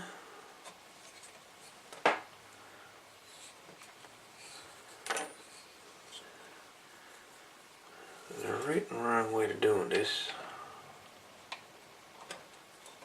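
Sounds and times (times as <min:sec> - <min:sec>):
light rubbing of parts: 0:00.6 - 0:02.4, 0:03.0 - 0:10.5.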